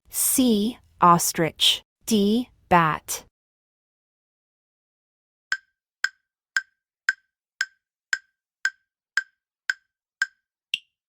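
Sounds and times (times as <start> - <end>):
wood-block-like timer ticks: 5.5 - 11.0.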